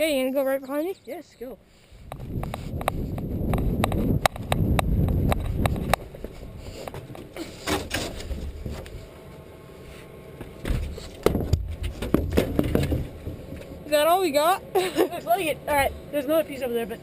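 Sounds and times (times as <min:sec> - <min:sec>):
low rumble of camera handling: 0:02.0 - 0:09.2.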